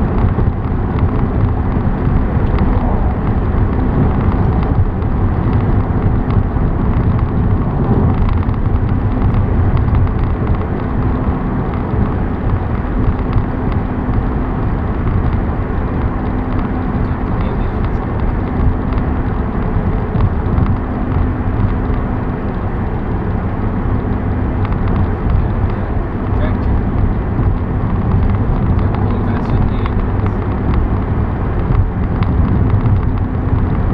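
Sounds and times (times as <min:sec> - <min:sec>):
car road and engine drone: 0:00.0 - 0:33.9
low hum: 0:00.0 - 0:33.9.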